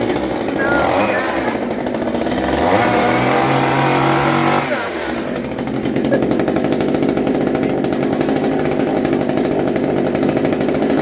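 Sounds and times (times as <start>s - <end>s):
chainsaw engine idling: 0.0s - 11.0s.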